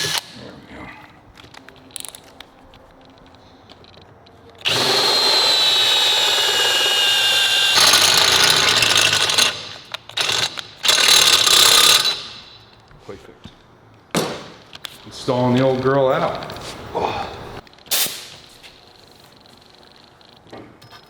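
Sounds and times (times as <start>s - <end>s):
electric drill boring steel: 0.0s - 0.4s, 4.6s - 12.6s.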